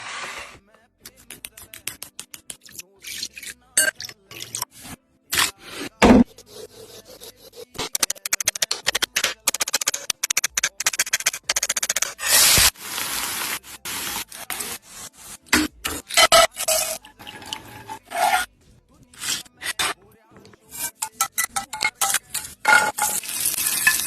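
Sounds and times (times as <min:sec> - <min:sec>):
background music: 0:00.0 - 0:24.0
rasping scraping strokes: 0:13.4 - 0:18.5.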